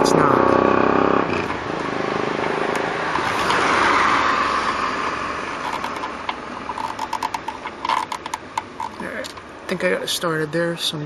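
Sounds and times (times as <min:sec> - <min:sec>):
car passing by: 0:01.6 - 0:06.2.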